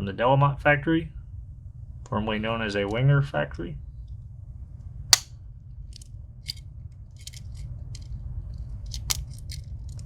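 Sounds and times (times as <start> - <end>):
low steady hum: 0.0 - 10.0
sharp snap: 5.1 - 5.4.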